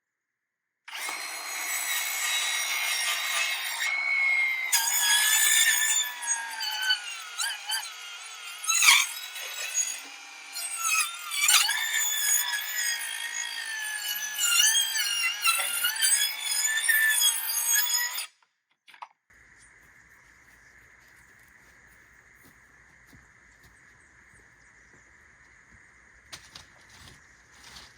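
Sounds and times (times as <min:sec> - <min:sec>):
power saw screeching: 0:00.9 - 0:18.3.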